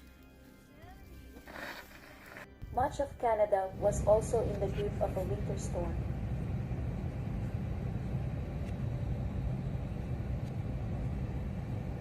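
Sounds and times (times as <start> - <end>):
low outdoor rumble: 2.6 - 12.0.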